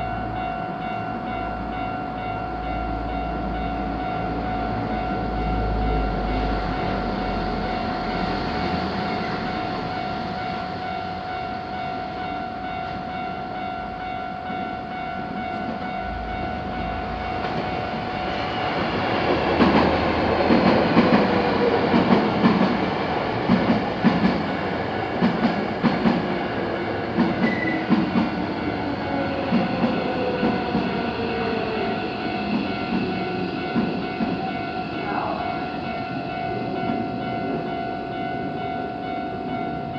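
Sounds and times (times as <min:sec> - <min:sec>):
railroad crossing alarm ringing: 0:00.0 - 0:39.9
train wheels clacking on rails: 0:12.6 - 0:39.7.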